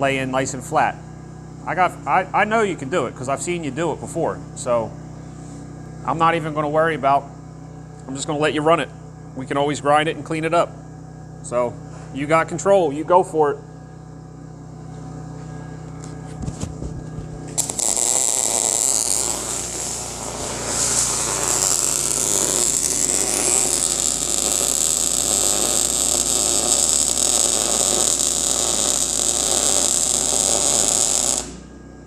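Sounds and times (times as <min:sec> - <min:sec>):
welding arc crackling and hissing: 0:16.3 - 0:31.7.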